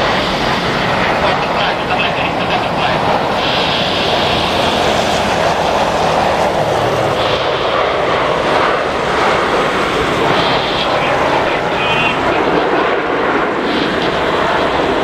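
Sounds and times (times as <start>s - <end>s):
jet engines rushing: 0.0s - 15.0s
heavy rain: 1.2s - 7.7s, 8.7s - 12.7s.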